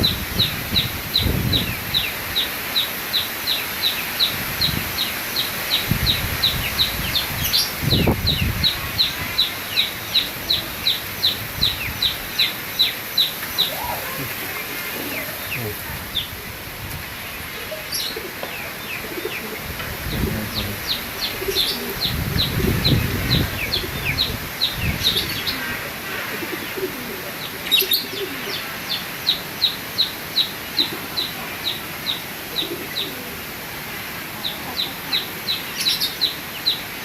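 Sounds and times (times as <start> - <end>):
wind rumbling on microphone: 0.0 - 2.4, 4.2 - 26.0.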